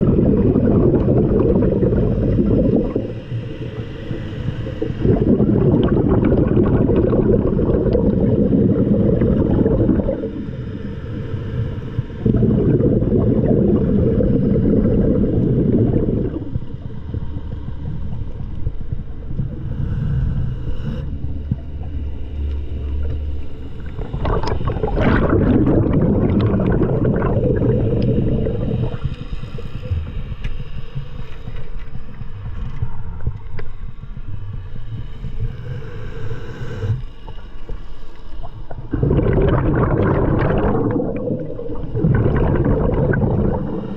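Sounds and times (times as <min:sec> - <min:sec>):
diver exhaling bubbles underwater: 0:00.0 - 0:18.2, 0:23.8 - 0:30.2, 0:38.5 - 0:43.9.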